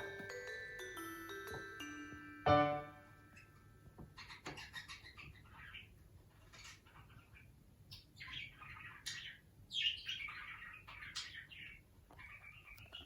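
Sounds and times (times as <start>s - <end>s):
budgerigar chirping: 4.1s - 13.0s.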